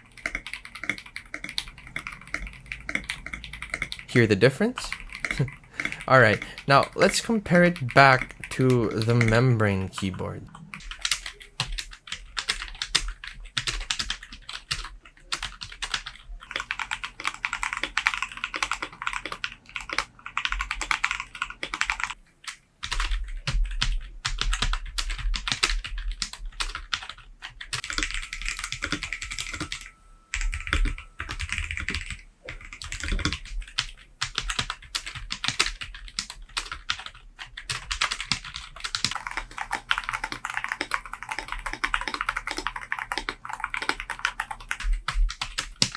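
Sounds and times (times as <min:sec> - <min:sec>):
fast typing on keyboard: 0:00.0 - 0:45.9.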